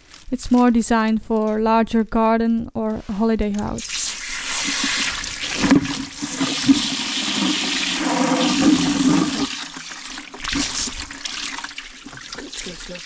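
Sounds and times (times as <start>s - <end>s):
water rushing and gurgling: 4.2s - 13.0s.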